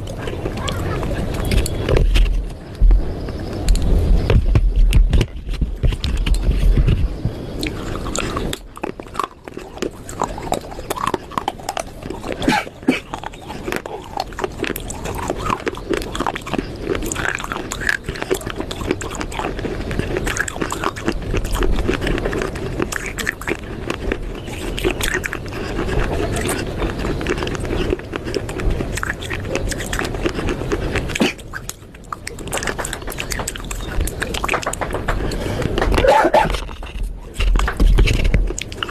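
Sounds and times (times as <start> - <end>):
crunching and chewing clay pieces: 0.0 - 38.9
mouth sounds: 22.9 - 37.6.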